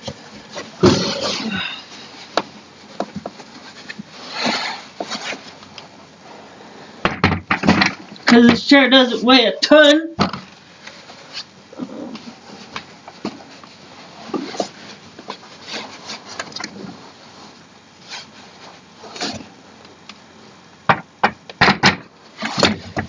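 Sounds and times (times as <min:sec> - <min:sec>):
sharp knocks: 0:20.9 - 0:23.0.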